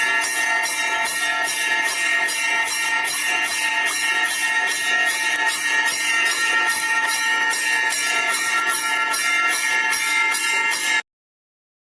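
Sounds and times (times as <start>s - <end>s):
temple bell ringing: 0.0s - 11.1s.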